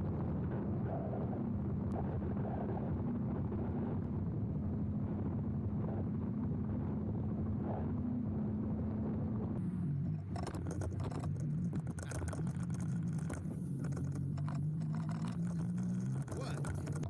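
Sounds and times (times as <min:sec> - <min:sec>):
low rumble: 0:00.0 - 0:17.0
wind noise: 0:00.0 - 0:17.0
electric motor hum: 0:09.6 - 0:17.0.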